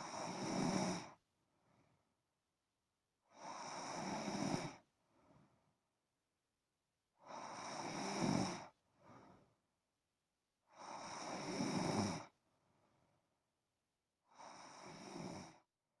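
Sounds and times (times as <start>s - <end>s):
person snoring: 0.0s - 1.2s, 7.3s - 8.7s, 10.8s - 12.3s, 14.3s - 15.6s
quiet breath: 0.0s - 2.2s, 3.2s - 5.9s, 7.2s - 9.8s, 10.6s - 13.4s, 14.2s - 15.7s.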